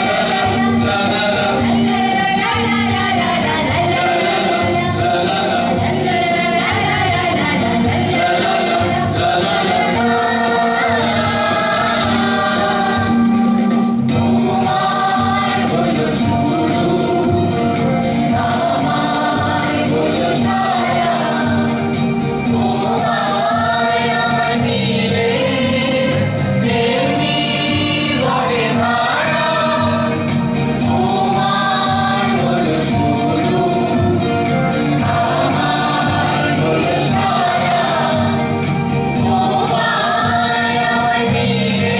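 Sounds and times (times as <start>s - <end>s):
percussion beat: 0.0s - 41.9s.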